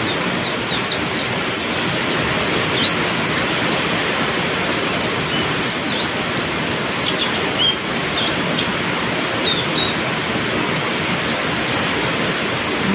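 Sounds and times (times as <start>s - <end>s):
songbird chirping: 0.0s - 10.0s
heavy rain falling: 10.0s - 12.9s.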